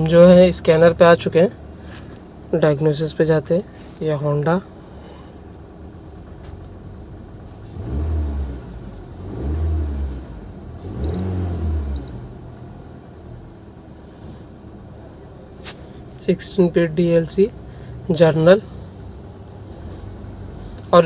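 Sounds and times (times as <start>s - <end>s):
car engine idling and revving: 5.5s - 14.8s, 17.3s - 21.0s
short electronic beeps: 11.0s - 11.3s, 12.0s - 12.2s.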